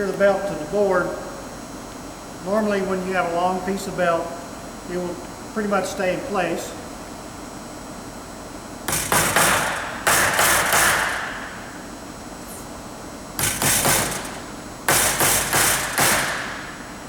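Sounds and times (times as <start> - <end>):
power tool bursts: 8.9 - 11.5, 13.4 - 16.8.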